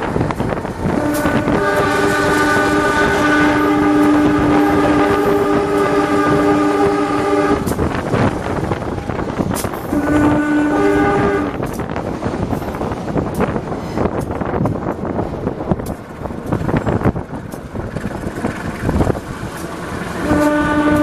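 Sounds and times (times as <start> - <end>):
train rumbling: 0.0 - 21.0
wheels clattering over rails: 0.0 - 21.0
locomotive horn chord: 0.9 - 7.8, 9.9 - 11.6, 20.2 - 21.0.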